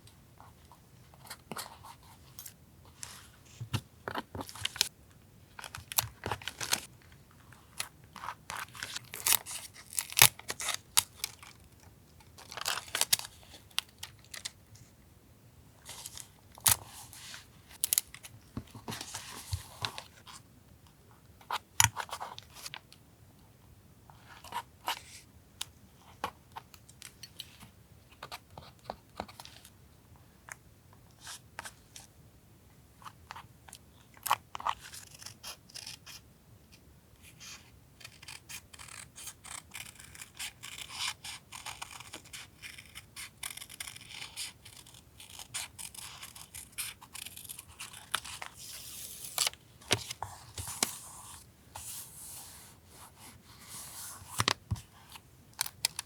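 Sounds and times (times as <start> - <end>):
paper clicks snips and crinkles: 8.5 - 11.6, 55.6 - 56.0.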